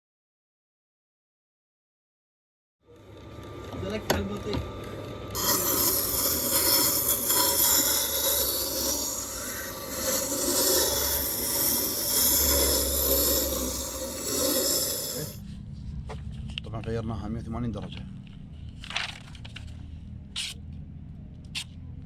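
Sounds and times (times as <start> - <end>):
low motor hum: 2.9 - 16.9
steel scraping on sharpening wheel: 5.4 - 15.4.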